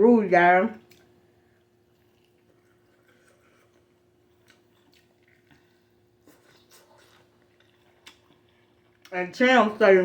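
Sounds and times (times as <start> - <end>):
wet mouth clicks from chewing: 0.8 - 1.2, 1.9 - 9.2.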